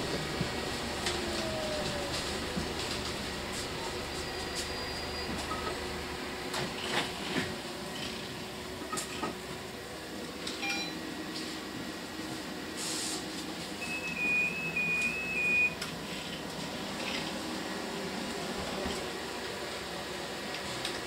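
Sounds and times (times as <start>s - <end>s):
bus cabin hum: 0.0s - 21.0s
short beep: 10.6s - 11.0s, 13.8s - 15.8s
hiss of air: 12.8s - 13.3s
two-tone high beeps: 13.8s - 15.8s.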